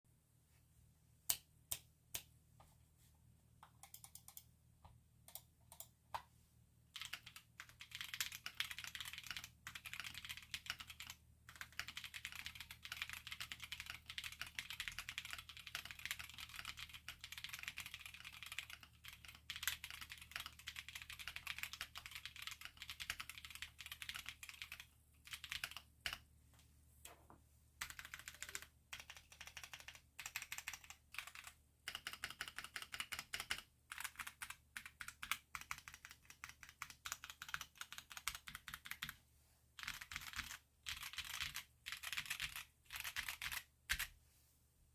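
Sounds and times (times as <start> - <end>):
mechanical keyboard typing: 3.6 - 4.5, 7.0 - 26.2, 27.8 - 39.2, 39.8 - 44.1.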